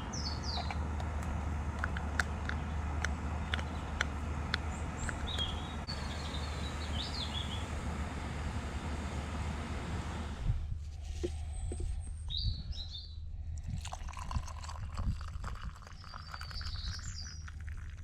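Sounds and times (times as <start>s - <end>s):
small birds chirping: 0.0s - 1.0s, 1.9s - 7.8s, 11.5s - 13.3s, 15.5s - 18.0s
steady rushing hiss: 5.8s - 11.4s.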